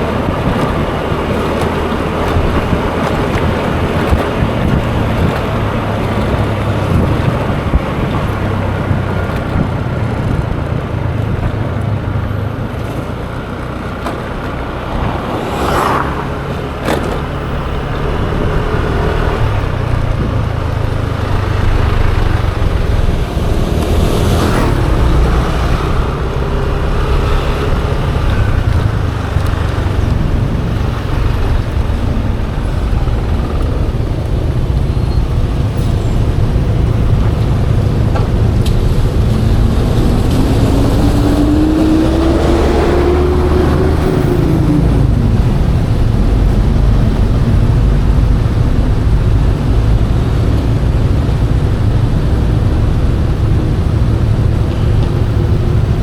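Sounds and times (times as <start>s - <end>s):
road traffic: 0.0s - 56.0s
scooter engine running: 0.0s - 56.0s
vehicles passing: 0.0s - 56.0s
wind on microphone: 0.0s - 56.0s.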